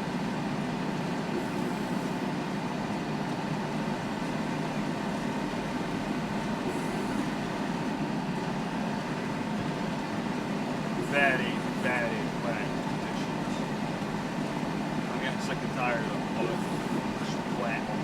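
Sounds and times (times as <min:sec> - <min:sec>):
tractor engine droning: 0:00.0 - 0:18.0.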